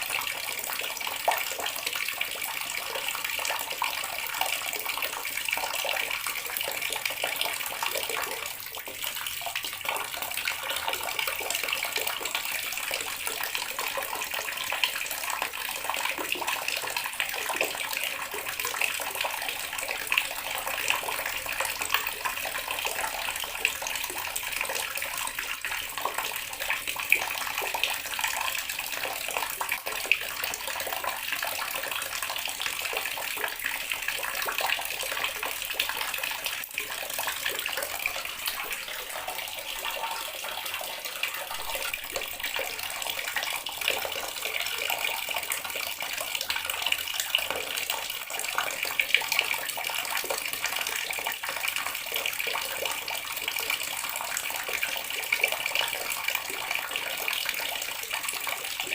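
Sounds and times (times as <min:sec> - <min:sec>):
water running from a tap: 0:00.0 - 0:58.9.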